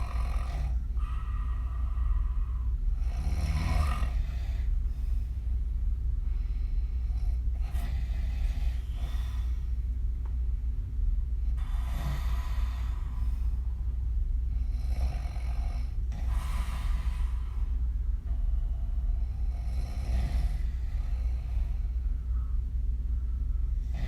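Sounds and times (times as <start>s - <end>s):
woman snoring: 0.0s - 4.7s, 11.6s - 13.4s, 14.6s - 17.7s, 19.0s - 22.0s
steady low hum: 0.0s - 24.0s.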